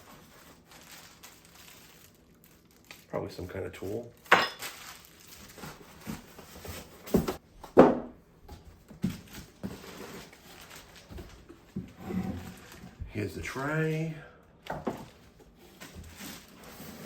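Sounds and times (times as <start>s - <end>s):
packaging crinkling and rustling: 0.0s - 7.4s, 8.8s - 13.0s, 15.0s - 17.0s.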